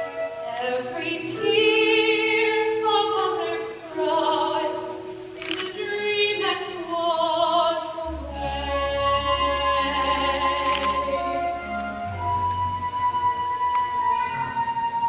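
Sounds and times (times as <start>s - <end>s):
person singing with vibrato: 0.0s - 11.9s
backing music: 0.0s - 15.0s.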